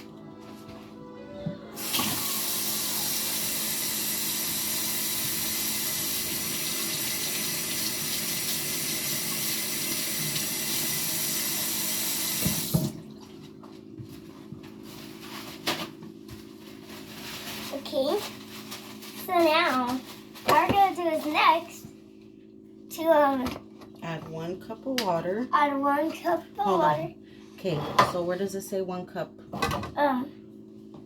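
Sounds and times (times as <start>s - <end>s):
tap running into sink: 3.8s - 13.0s
tap turned off knock: 12.4s - 13.0s.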